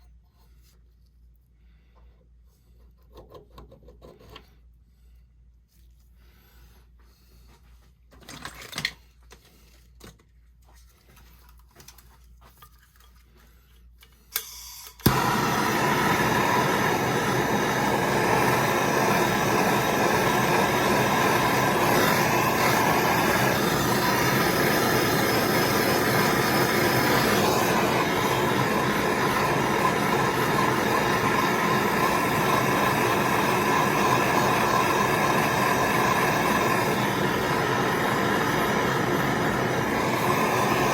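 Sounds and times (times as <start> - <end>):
torch lighting with a pop: 14.4 - 40.9
soldering torch rushing hiss: 14.5 - 40.9.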